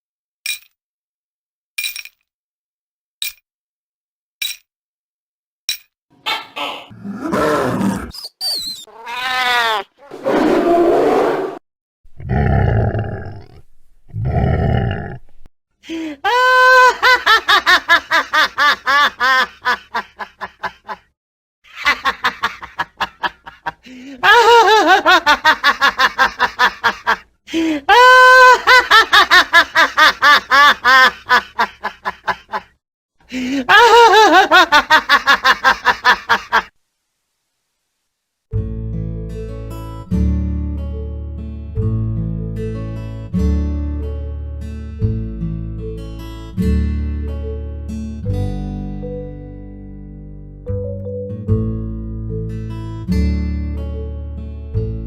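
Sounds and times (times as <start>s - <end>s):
maniacal cackling: 6.2s - 8.1s, 16.2s - 21.0s, 21.7s - 27.2s, 27.9s - 32.8s, 33.4s - 36.7s
low growl-like sounds: 6.9s - 8.1s, 10.1s - 15.5s.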